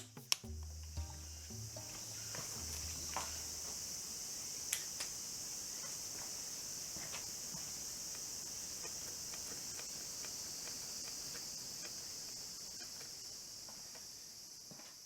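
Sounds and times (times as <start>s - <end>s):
insects chirping: 0.0s - 15.0s
faint ticks: 0.3s - 3.8s, 7.0s - 14.1s.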